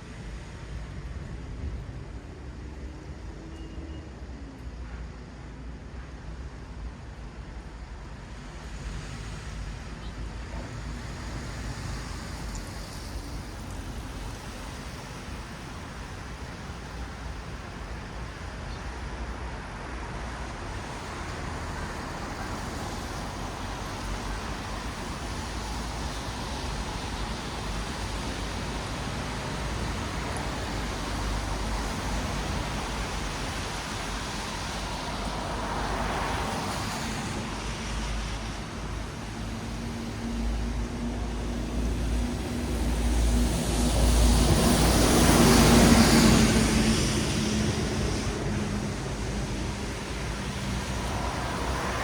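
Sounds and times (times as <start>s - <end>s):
tyres hissing on wet road: 0.0s - 52.0s
vehicles passing: 8.7s - 52.0s
vehicle engine hum: 37.5s - 52.0s.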